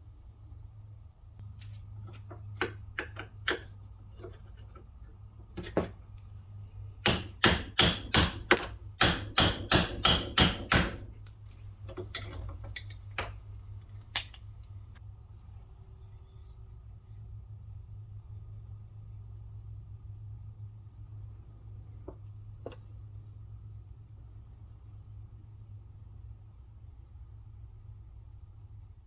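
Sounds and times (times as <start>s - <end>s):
hammer striking metal: 7.0s - 11.1s.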